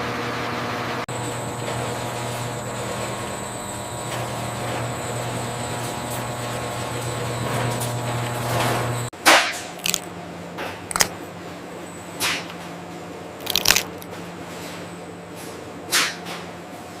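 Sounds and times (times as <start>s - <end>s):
machine hum: 0.0s - 9.1s
sharp clicks or crunches: 9.6s - 10.1s, 10.9s - 11.2s, 13.4s - 14.1s.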